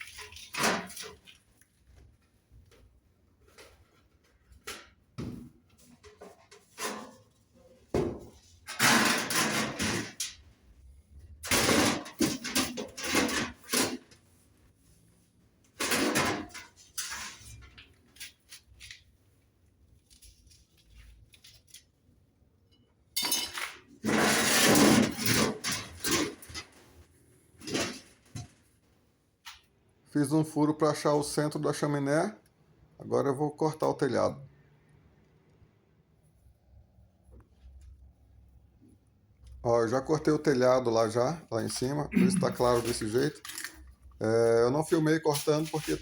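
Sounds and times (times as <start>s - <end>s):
metal clattering and scraping: 8.6s - 10.4s, 11.4s - 14.2s, 15.8s - 17.6s, 24.0s - 28.3s.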